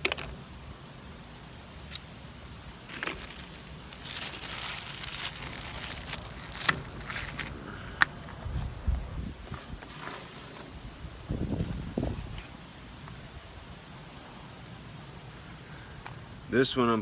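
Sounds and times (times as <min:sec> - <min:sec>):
plastic packaging crinkling: 0:02.8 - 0:07.8.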